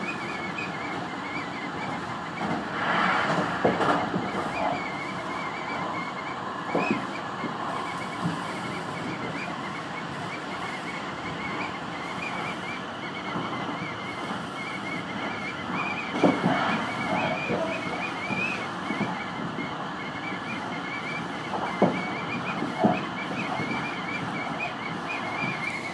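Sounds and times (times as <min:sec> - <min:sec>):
high wavering whine: 0:00.0 - 0:25.9
train wheels rumbling on rail: 0:00.0 - 0:25.9.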